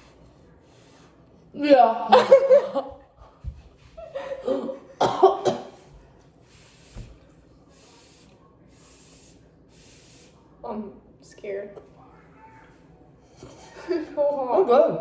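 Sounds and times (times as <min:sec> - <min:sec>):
woman coughing: 0:02.0 - 0:02.9, 0:04.3 - 0:05.8
faint short breaths: 0:06.4 - 0:10.4.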